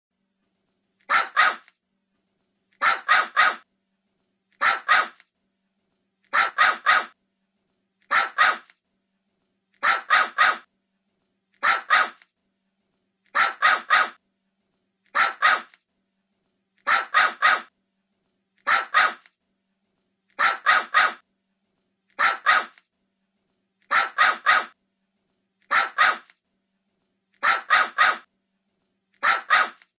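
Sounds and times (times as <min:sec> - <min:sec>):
puppy barking: 0:01.1 - 0:01.7, 0:02.8 - 0:03.6, 0:04.6 - 0:05.2, 0:06.3 - 0:07.2, 0:08.1 - 0:08.7, 0:09.8 - 0:10.7, 0:11.6 - 0:12.2, 0:13.3 - 0:14.2, 0:15.1 - 0:15.8, 0:16.8 - 0:17.7, 0:18.6 - 0:19.3, 0:20.4 - 0:21.2, 0:22.2 - 0:22.8, 0:23.8 - 0:24.8, 0:25.6 - 0:26.3, 0:27.4 - 0:28.3, 0:29.2 - 0:29.9.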